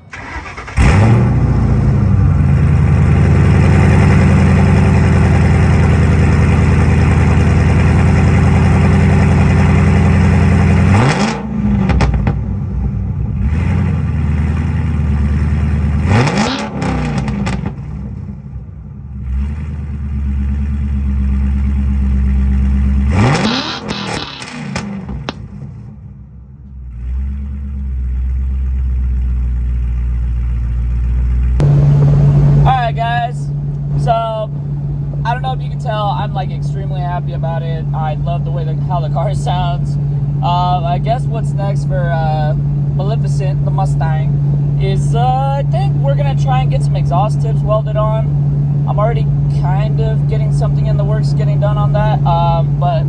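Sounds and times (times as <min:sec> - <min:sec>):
car engine idling: 0:00.0 - 0:53.0
engine throttle blips: 0:00.0 - 0:53.0.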